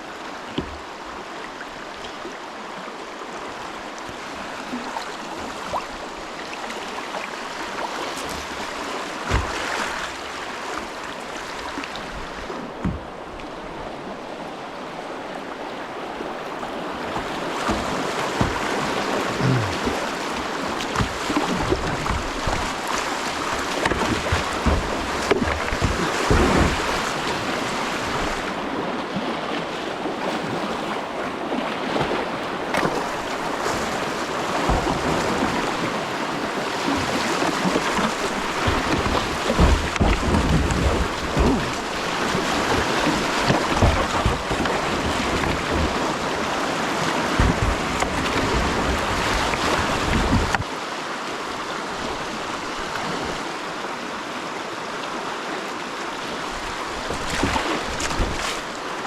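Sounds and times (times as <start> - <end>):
whitewater rapids rushing: 0.0 - 28.9, 32.1 - 59.0
buffeting on microphone: 19.3 - 20.4.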